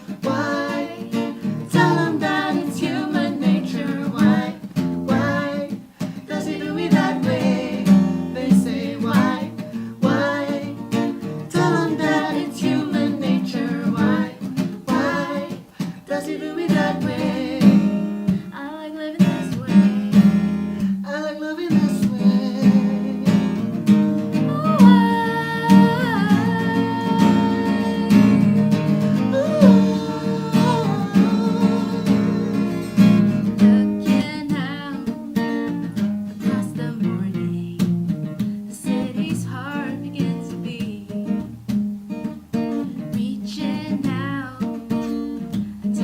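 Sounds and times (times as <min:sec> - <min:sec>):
acoustic guitar strumming chords: 0:00.0 - 0:46.0
person singing long notes: 0:24.5 - 0:35.1.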